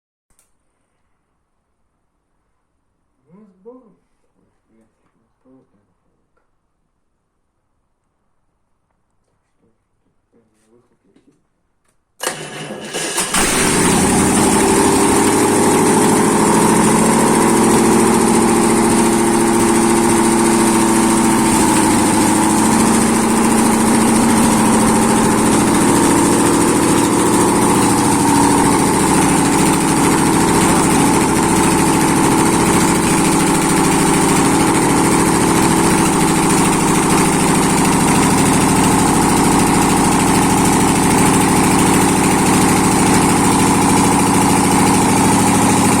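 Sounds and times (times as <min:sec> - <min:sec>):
engine cranking and idling: 0:12.2 - 0:46.0.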